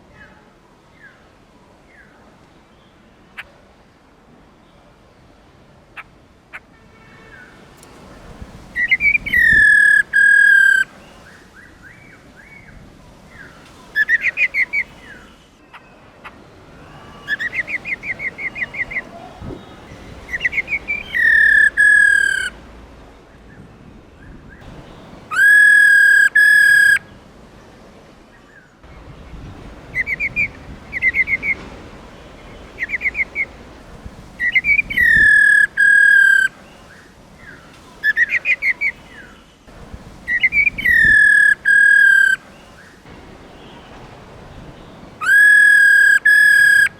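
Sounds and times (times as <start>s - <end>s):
loud whistled bird notes: 8.8s - 10.9s, 16.9s - 22.5s, 25.3s - 27.0s, 30.0s - 31.6s, 34.4s - 36.5s, 40.3s - 42.4s, 45.2s - 46.9s
bird rattling trills: 20.3s - 22.5s, 25.3s - 27.0s, 34.4s - 36.5s, 40.3s - 42.4s.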